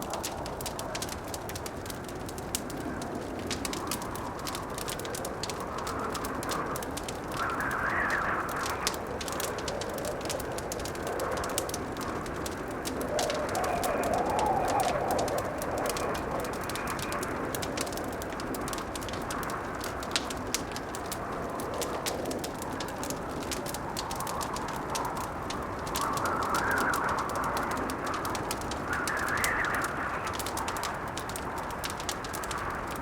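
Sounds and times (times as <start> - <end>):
wind howling in gusts: 0.0 - 33.0
wood fire crackling: 0.0 - 33.0.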